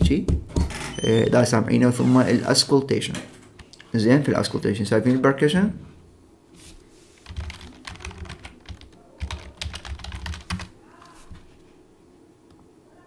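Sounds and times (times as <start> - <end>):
typing on computer keyboard: 7.2 - 11.2.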